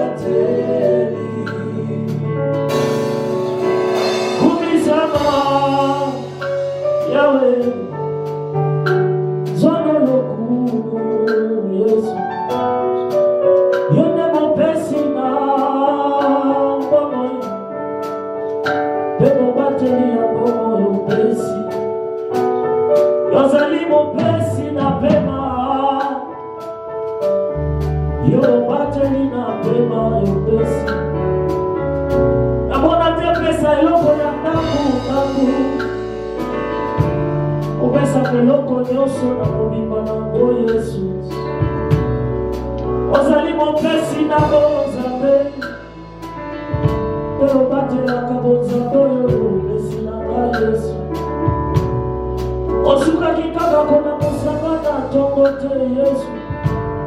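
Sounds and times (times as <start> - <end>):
person singing gospel: 0.0 - 3.2, 3.8 - 8.3, 9.5 - 12.3, 13.9 - 17.8, 19.2 - 22.0, 23.3 - 26.4, 28.2 - 31.2, 32.6 - 41.6, 43.1 - 51.3, 52.7 - 56.8
bass notes: 0.0 - 57.0
keyboard chords: 0.0 - 57.0.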